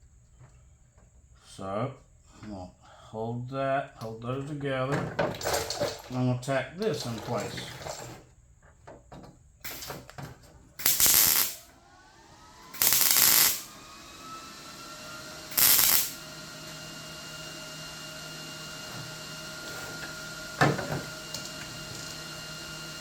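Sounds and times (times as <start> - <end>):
crackling tack welds: 9.6 - 10.2, 10.8 - 11.8, 12.6 - 13.8, 15.4 - 16.3, 20.0 - 23.0.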